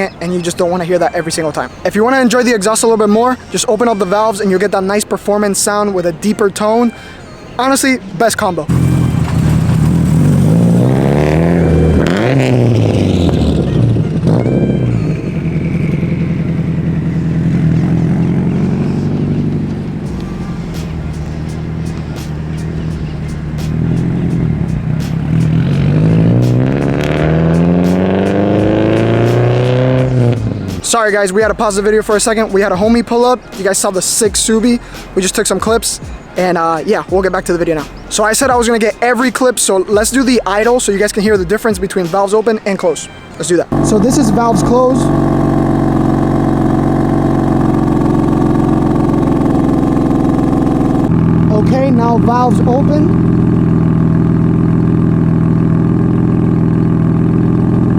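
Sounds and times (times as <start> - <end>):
car engine accelerating: 8.7 - 32.8, 43.6 - 57.9.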